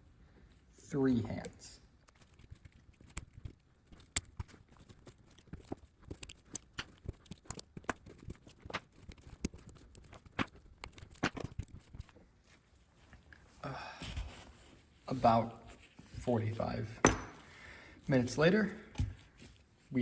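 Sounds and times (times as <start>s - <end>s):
light metal clicks and taps: 1.3s - 8.4s
sharp metal knocks: 17.0s - 17.4s.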